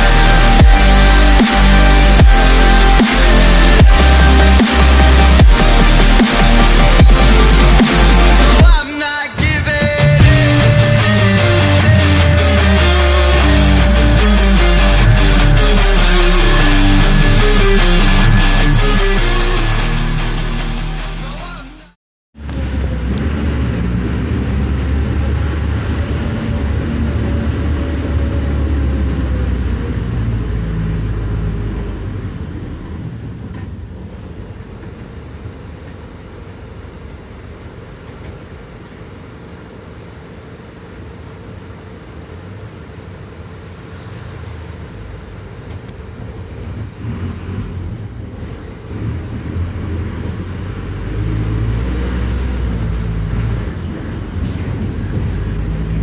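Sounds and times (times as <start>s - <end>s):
engine whine: 0.0s - 21.2s, 22.4s - 56.0s
bus diesel engine: 0.0s - 56.0s.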